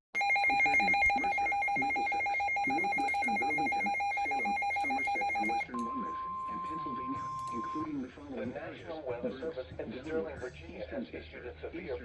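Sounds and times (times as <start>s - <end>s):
rapidly pulsing electronic beep: 0.2s - 8.0s.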